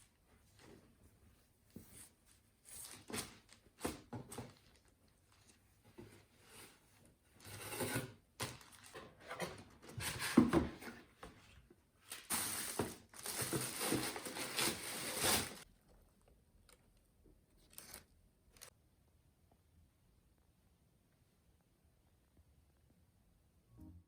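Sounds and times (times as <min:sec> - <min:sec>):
rustling and crinkling handling: 0:00.0 - 0:18.7.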